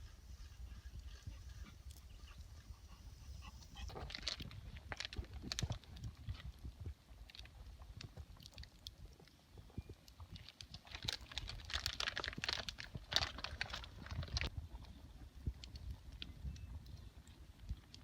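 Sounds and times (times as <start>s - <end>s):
campfire crackling and popping: 3.9s - 18.0s.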